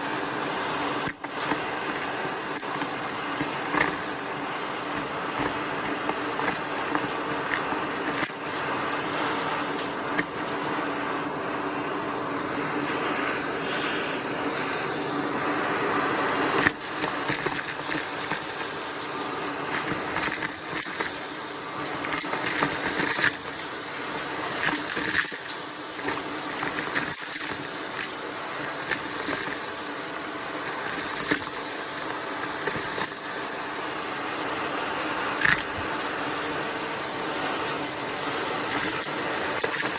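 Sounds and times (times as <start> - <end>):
vacuum cleaner running: 0.0 - 39.9
debris crackling and rattling: 19.6 - 33.3.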